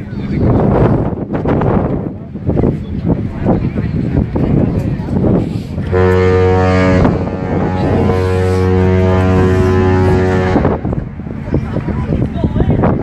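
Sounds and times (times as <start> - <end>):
wind on microphone: 0.0 - 13.0
deep ship horn blast: 5.8 - 12.2.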